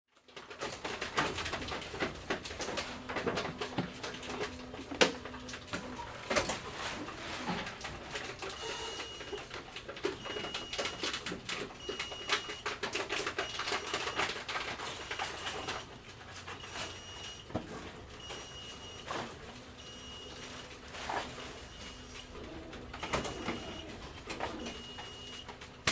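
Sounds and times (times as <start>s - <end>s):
containers clattering and clicking: 0.2s - 17.0s.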